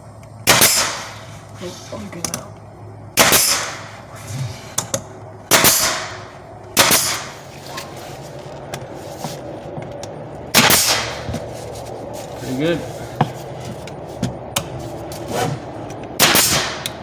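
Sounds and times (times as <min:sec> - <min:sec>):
nail gun firing: 0:00.4 - 0:01.2, 0:03.2 - 0:03.9, 0:05.5 - 0:06.2, 0:06.8 - 0:07.4, 0:10.6 - 0:11.2, 0:16.2 - 0:17.0.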